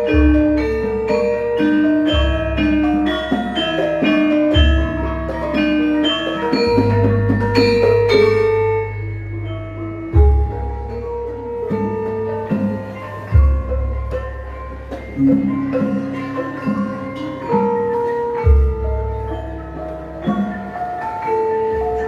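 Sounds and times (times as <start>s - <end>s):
gamelan ensemble playing: 0.0s - 22.0s.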